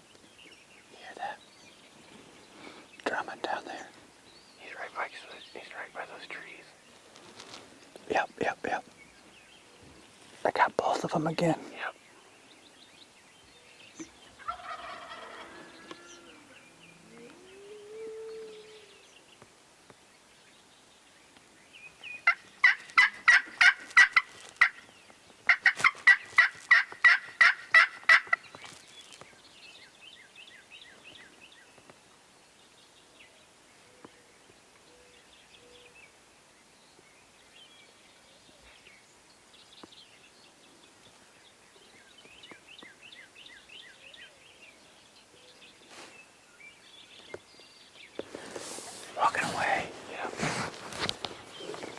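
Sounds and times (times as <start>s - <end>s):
faint chirping calls: 0.0s - 7.0s
wild turkey yelping: 14.4s - 16.6s, 25.5s - 28.4s.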